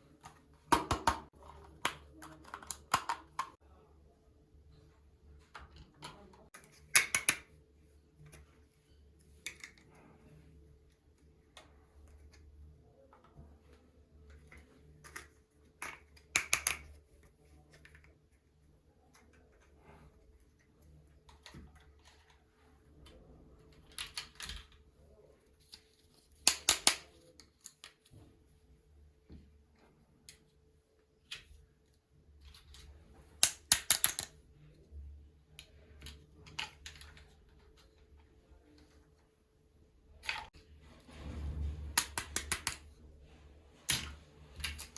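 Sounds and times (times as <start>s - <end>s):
toy pieces clicking and tapping: 0.7s - 3.6s, 6.0s - 7.5s, 15.0s - 17.0s, 26.4s - 28.0s, 33.4s - 34.4s, 42.0s - 42.8s.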